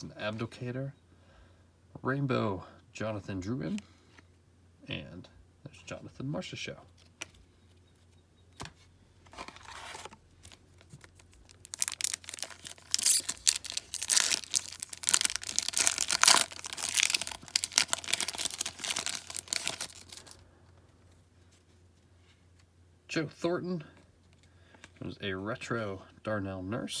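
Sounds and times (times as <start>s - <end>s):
wrapper tearing and crinkling: 9.4s - 20.4s.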